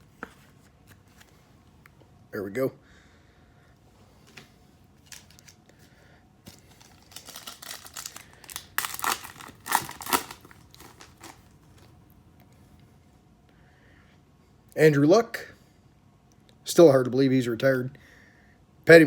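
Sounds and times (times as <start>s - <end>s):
trading cards crinkling: 5.0s - 5.6s, 6.5s - 11.9s.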